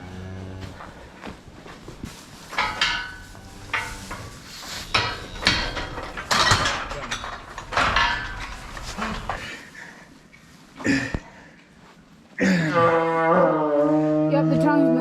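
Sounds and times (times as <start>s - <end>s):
metal clanks and rattles: 2.1s - 9.7s.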